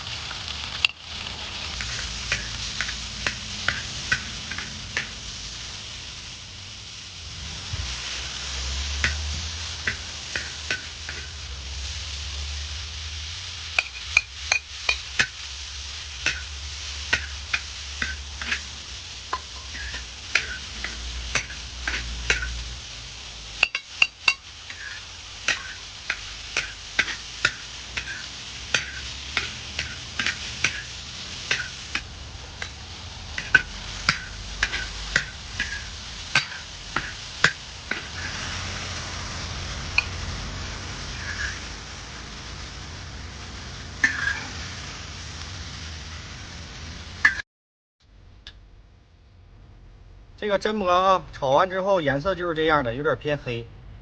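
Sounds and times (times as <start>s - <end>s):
food sizzling in a wok: 0.0s - 47.4s
spatula scraping and clinking pan: 1.8s - 5.1s, 9.0s - 11.4s, 13.8s - 15.3s, 17.1s - 18.7s, 19.3s - 22.6s, 23.6s - 30.9s, 31.5s - 32.8s, 33.4s - 38.5s, 41.1s - 41.6s, 44.0s - 44.6s.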